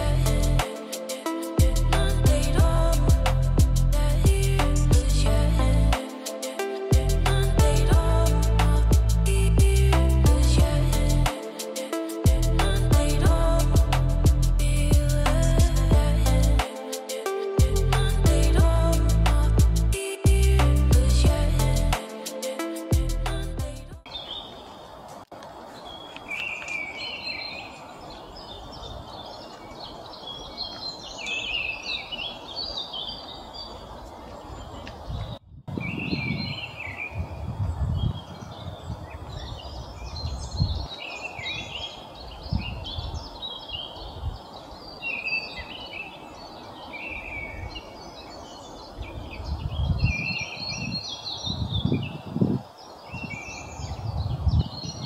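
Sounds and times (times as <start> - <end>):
outdoor background noise: 0.0 - 55.0
songbird singing: 0.0 - 55.0
low rumble: 1.6 - 6.0, 7.0 - 11.3, 12.3 - 16.6.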